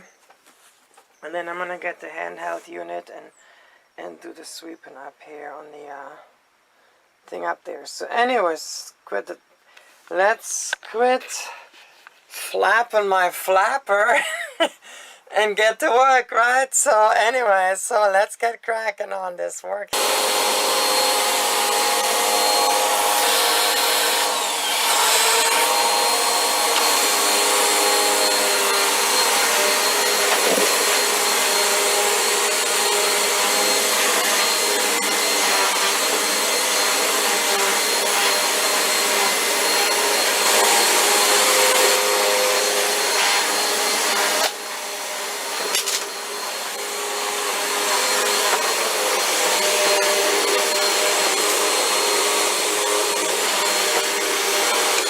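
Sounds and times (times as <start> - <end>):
vacuum cleaner running: 19.9 - 55.0.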